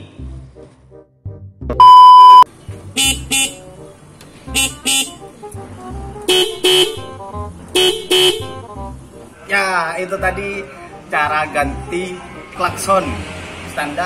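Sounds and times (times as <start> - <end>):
background music: 0.0 - 14.0
loud steady high beep: 1.8 - 2.5
horn honking double toots: 3.0 - 3.7, 4.5 - 5.2, 6.2 - 7.2, 7.8 - 8.6.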